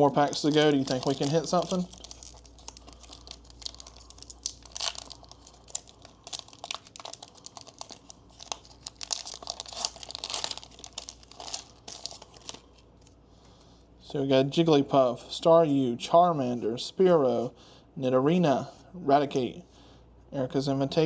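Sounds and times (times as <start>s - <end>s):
foil wrapper tearing and crinkling: 0.0s - 12.7s.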